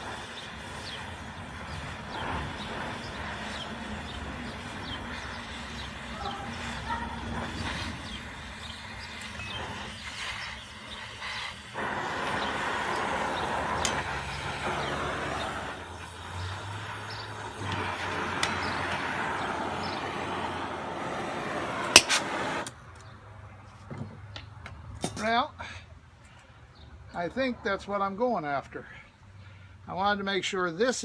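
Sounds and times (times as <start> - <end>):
gas torch hissing: 0.0 - 22.8.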